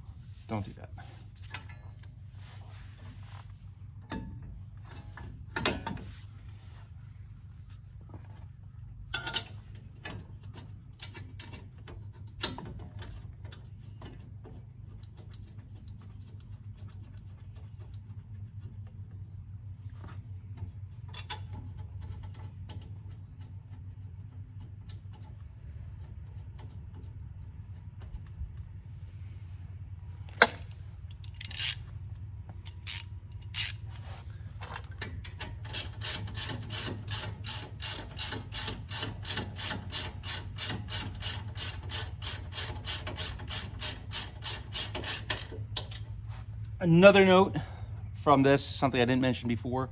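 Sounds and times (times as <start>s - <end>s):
steady low hum: 0.0s - 49.9s
ratchet wrench clicking: 30.3s - 31.8s, 32.6s - 33.8s, 35.7s - 46.0s.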